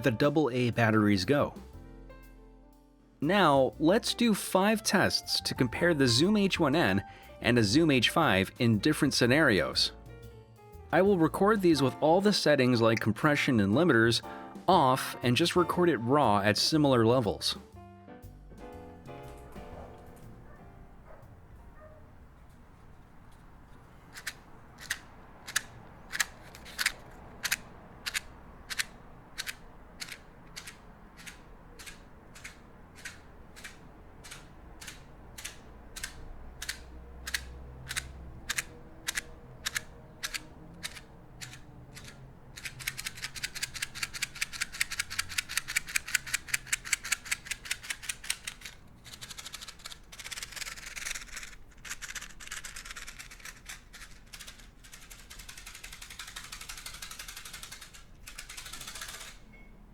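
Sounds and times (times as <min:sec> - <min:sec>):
sharp clicks: 0:24.1 - 0:59.4.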